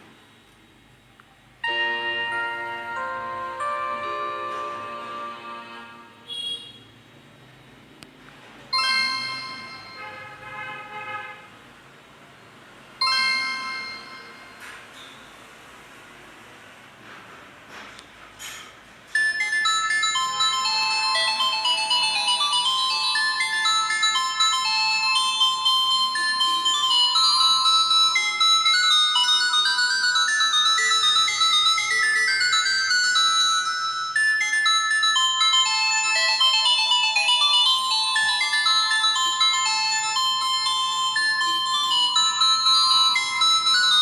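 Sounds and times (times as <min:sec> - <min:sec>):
polyphonic phone ringtone melody: 0:01.6 - 0:06.3, 0:08.8 - 0:10.5, 0:13.0 - 0:14.8, 0:19.2 - 0:44.0.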